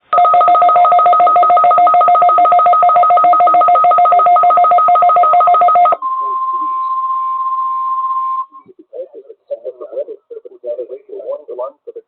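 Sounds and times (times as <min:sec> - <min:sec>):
touch-tone keypad beeps: 0:00.2 - 0:08.5.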